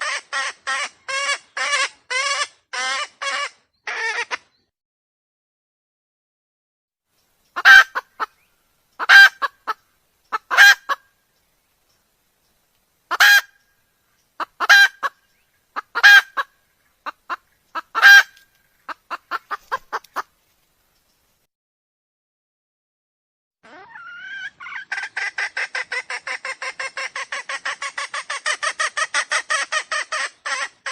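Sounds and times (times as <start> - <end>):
junglefowl calling: 0.0 - 4.5, 7.5 - 11.2, 13.1 - 13.7, 14.4 - 20.3, 23.6 - 30.9.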